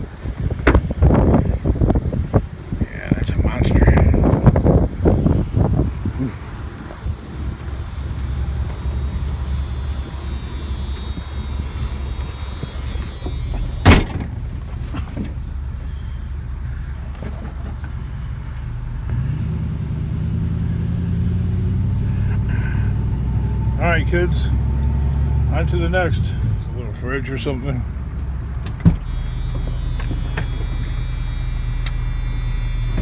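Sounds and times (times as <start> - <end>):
engine idling low rumble: 0.0 - 33.0.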